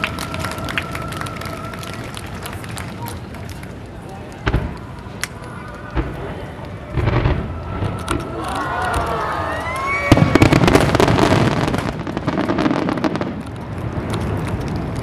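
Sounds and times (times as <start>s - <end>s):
loud firework burst: 6.0s - 8.5s, 9.8s - 14.8s
whistling firework shells: 7.0s - 13.2s
crackle of small pops: 11.8s - 15.0s.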